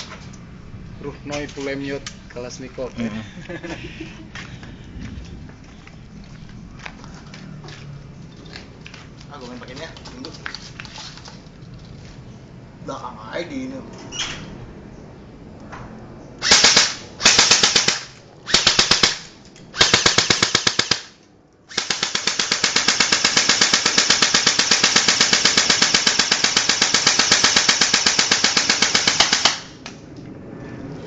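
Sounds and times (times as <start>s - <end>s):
airsoft gun firing bursts: 16.4s - 29.8s.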